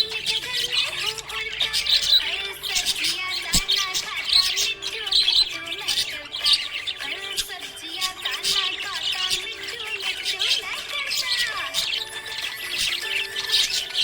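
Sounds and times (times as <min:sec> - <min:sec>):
budgerigars chirping and chattering: 0:00.0 - 0:14.0.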